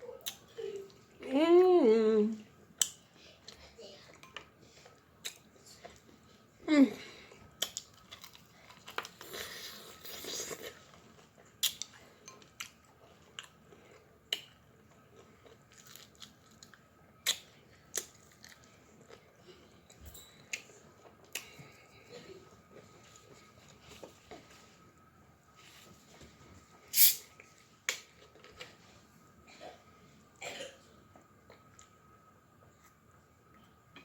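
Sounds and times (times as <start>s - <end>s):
quiet chewing: 2.4s - 29.2s.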